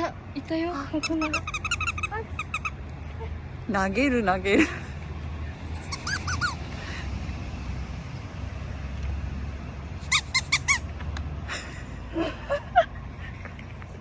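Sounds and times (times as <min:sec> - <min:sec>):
squeaky dog toy squeaking: 0:01.0 - 0:02.9, 0:05.7 - 0:06.7, 0:10.0 - 0:11.0.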